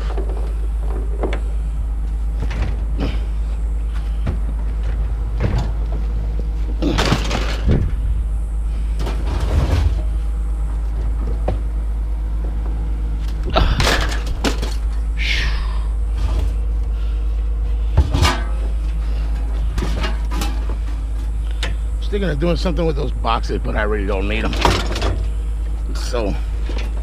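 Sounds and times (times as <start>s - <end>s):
low mechanical hum: 0.0s - 27.0s
scrap banging and clattering: 9.0s - 10.2s, 17.9s - 21.0s.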